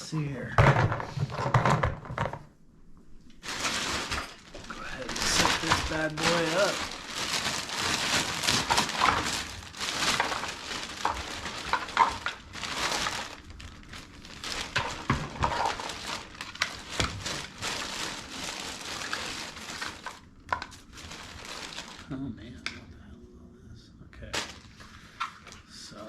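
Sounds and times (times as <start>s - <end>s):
plastic parts knocking together: 0.6s - 2.5s, 8.5s - 13.2s, 14.6s - 17.5s
packaging rustling and crinkling: 3.4s - 22.2s, 24.3s - 25.6s.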